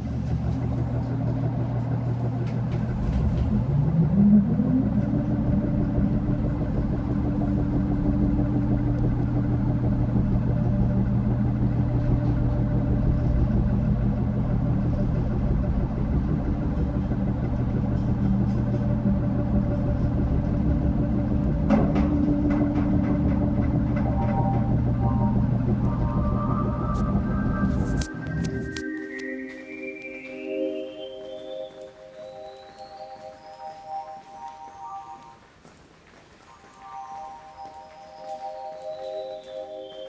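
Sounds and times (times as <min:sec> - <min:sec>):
low steady hum and rumble: 0:00.0 - 0:29.2
tone gliding upward: 0:00.0 - 0:35.4.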